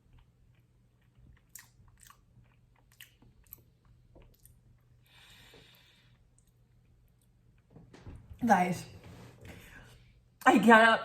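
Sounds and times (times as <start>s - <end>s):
faint chewing: 0.0s - 7.7s.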